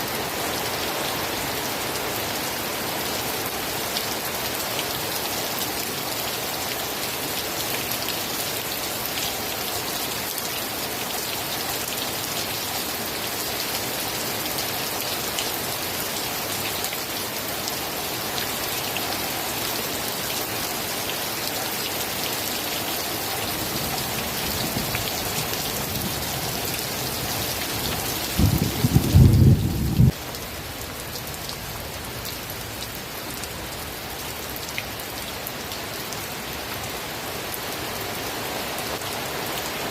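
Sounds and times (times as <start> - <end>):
heavy rain: 0.0 - 39.9
thunder rumble: 28.2 - 30.2.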